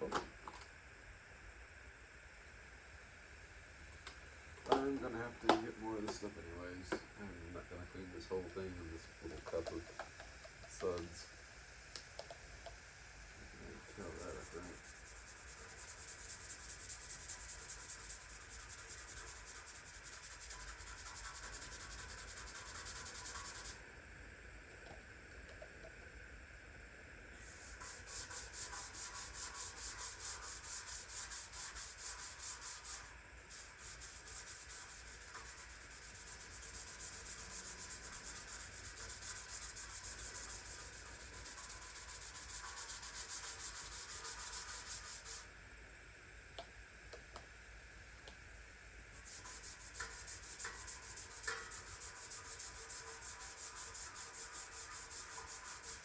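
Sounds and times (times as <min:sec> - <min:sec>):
cloth scrubbing a surface: 0:14.0 - 0:23.8, 0:27.4 - 0:45.4, 0:49.2 - 0:56.0.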